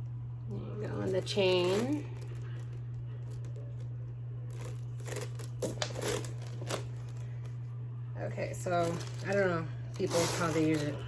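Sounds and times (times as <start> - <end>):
low hum: 0.0 - 11.0
leather handbag rustling: 0.9 - 3.8, 4.5 - 7.6, 8.6 - 11.0.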